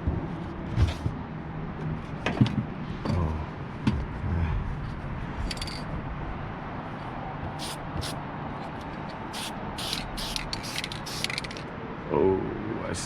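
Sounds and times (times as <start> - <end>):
handling knocks and clunks: 0.0 - 1.2, 2.1 - 4.2
aerosol spray can hiss: 7.6 - 8.2, 9.4 - 11.6.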